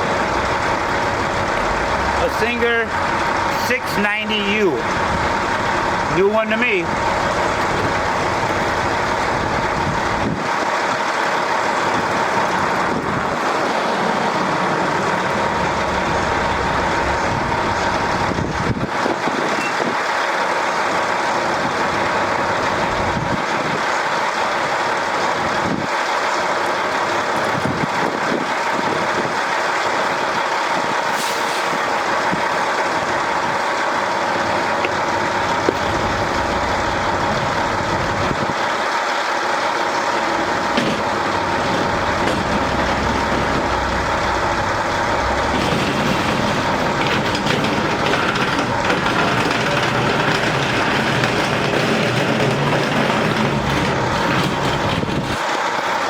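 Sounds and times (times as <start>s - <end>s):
mechanical drone: 39.8s - 55.4s.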